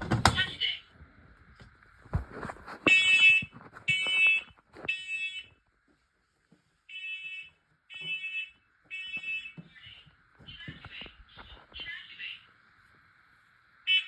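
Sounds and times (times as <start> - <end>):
smoke alarm beeping: 6.9 - 10.0.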